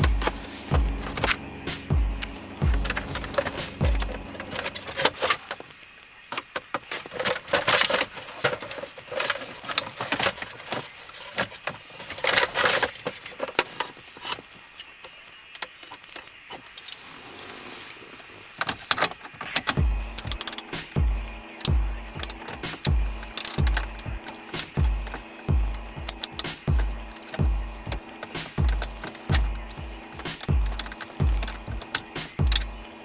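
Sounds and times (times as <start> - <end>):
rustling: 0.0 - 5.8, 16.5 - 20.4
small hard parts clattering: 6.4 - 14.8, 21.6 - 32.7.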